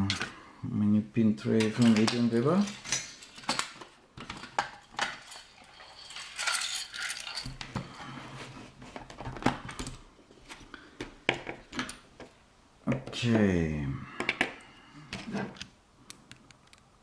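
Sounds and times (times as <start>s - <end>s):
padlock parts clinking: 1.5s - 3.8s
metal parts rattling: 1.5s - 8.0s.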